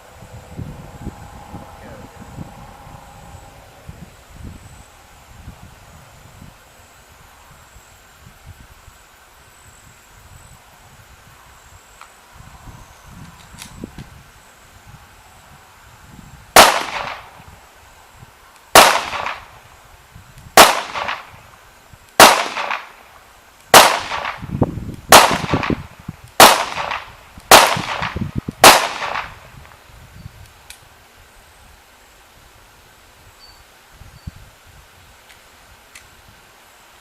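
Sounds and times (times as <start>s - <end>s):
pistol shots with echo: 16.6s - 17.4s, 18.8s - 19.5s, 20.6s - 21.3s, 22.2s - 22.9s, 23.7s - 24.5s, 25.1s - 25.8s, 26.4s - 29.4s.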